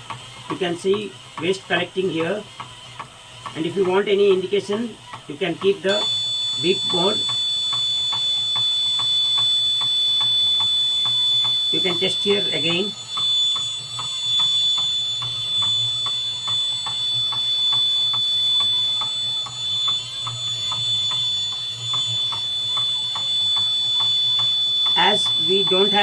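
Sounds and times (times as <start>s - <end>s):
faint ticking: 0.0s - 26.0s
small motors humming: 0.0s - 26.0s
high buzzer tone: 5.8s - 26.0s.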